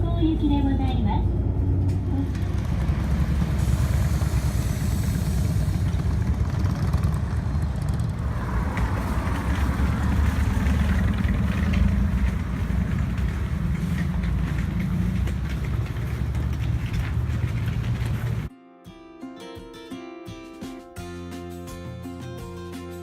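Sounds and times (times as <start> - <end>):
bus engine rumble: 0.0 - 18.5
road noise hiss: 2.4 - 18.5.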